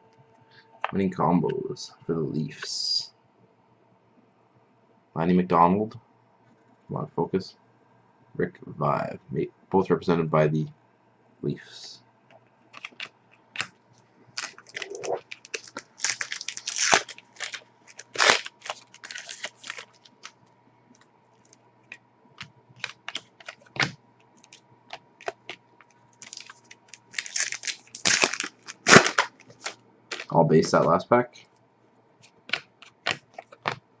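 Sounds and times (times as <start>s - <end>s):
cards clicking and rustling: 12.7s - 13.7s, 14.3s - 20.4s, 21.4s - 30.4s, 32.2s - 33.8s.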